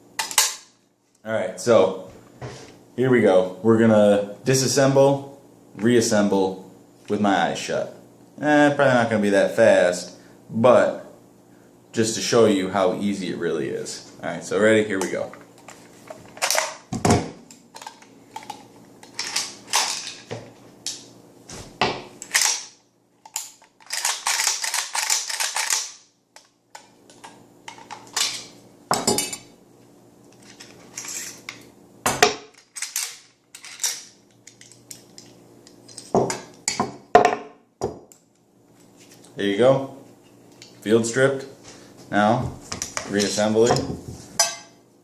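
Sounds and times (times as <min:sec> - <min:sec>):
rifle parts clicking and clacking: 0:22.3 - 0:28.4.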